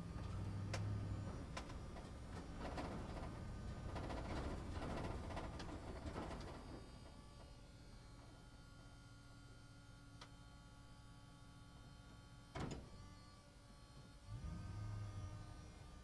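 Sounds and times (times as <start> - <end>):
truck engine and tyres: 0.0 - 6.7.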